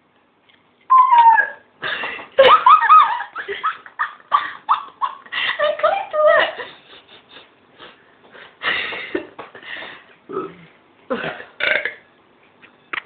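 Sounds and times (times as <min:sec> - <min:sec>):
girls laughing: 0:01.8 - 0:07.5.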